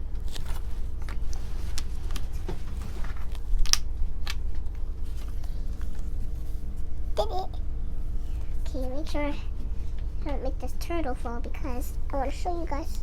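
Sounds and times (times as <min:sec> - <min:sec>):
steady low hum: 0:00.0 - 0:13.0
wooden puzzle pieces clicking: 0:03.6 - 0:04.4.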